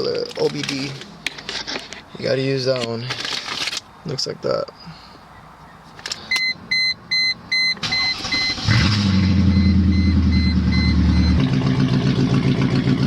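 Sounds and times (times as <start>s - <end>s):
car warning chime beeping: 6.3s - 11.6s
car engine cranking and starting: 7.6s - 13.0s
car engine idling unevenly: 7.8s - 13.0s.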